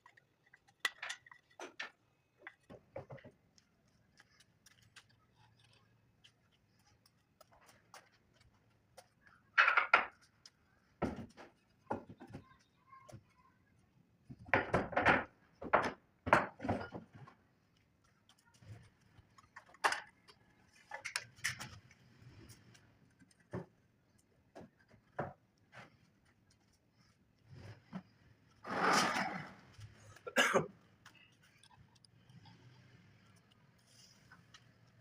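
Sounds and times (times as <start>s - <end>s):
wooden pieces knocking: 9.5s - 10.2s
rough scraping noise: 28.6s - 30.0s.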